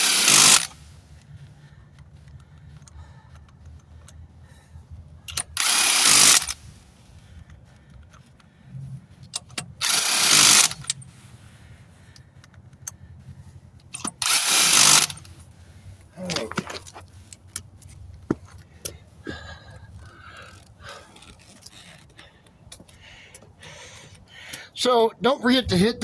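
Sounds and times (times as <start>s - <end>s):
impact wrench bursts: 0.0s - 0.9s, 5.2s - 6.8s, 9.2s - 11.2s, 13.8s - 15.4s
metallic clicks and knocks: 9.2s - 9.8s, 13.8s - 15.3s.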